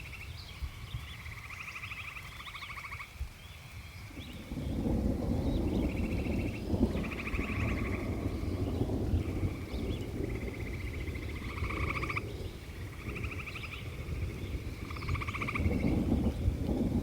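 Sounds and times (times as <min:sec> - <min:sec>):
frogs calling in trills: 0:00.0 - 0:03.2, 0:05.2 - 0:16.4
steady low rumble: 0:04.3 - 0:17.0.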